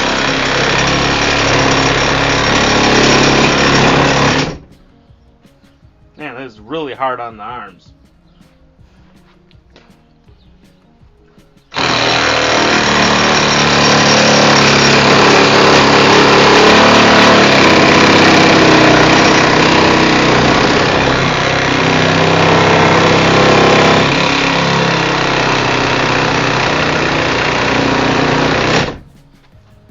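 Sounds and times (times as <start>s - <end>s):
reciprocating saw cutting: 0.0s - 4.7s, 11.7s - 29.1s.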